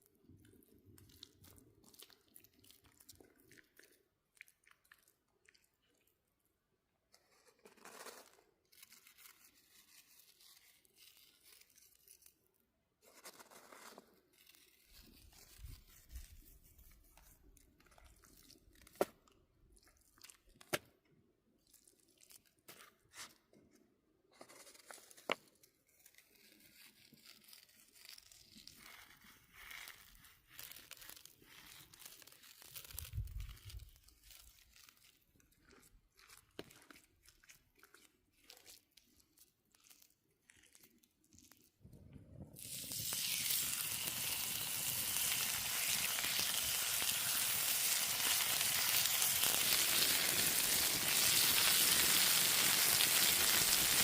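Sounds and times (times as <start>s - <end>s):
crinkling and tearing: 7.2s - 21.0s, 24.4s - 41.8s.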